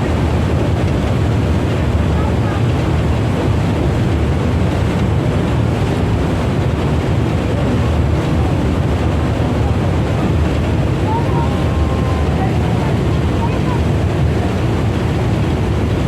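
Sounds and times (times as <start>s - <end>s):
loud low rumble: 0.0s - 16.0s
wind buffeting microphone: 0.0s - 16.0s.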